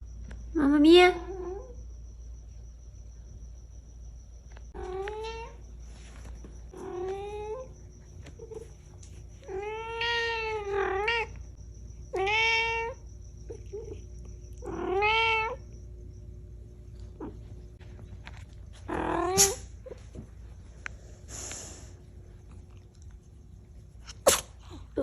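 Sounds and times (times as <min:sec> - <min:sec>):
cat meowing: 0:12.1 - 0:13.0, 0:14.6 - 0:15.6.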